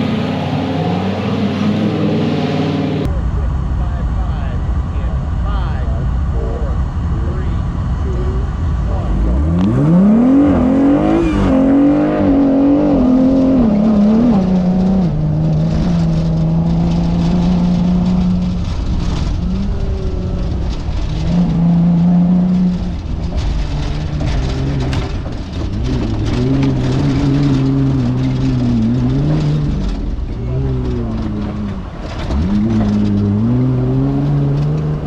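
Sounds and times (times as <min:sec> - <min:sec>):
off-road vehicle engine revving: 0:00.0 - 0:35.0.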